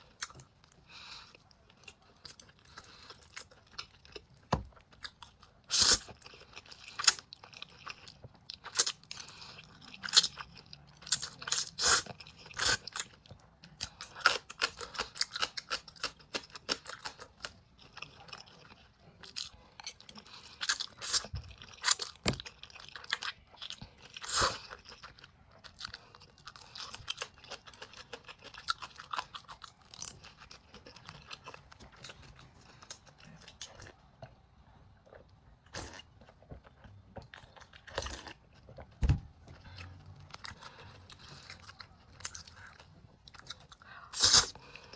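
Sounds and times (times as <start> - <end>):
person chewing food: 0.0 - 44.9.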